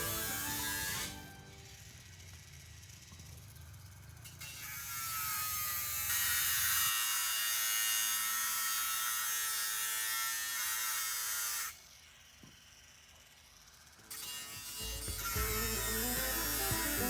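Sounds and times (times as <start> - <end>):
electric motor whining: 0.0 - 2.6, 14.4 - 17.0
loud hiss: 14.8 - 17.0.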